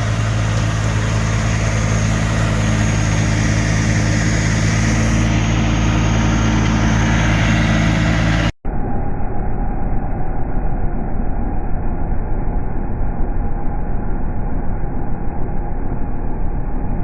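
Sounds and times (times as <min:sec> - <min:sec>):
snowblower engine running: 0:00.0 - 0:08.5
muffled rushing rumble: 0:00.0 - 0:17.0.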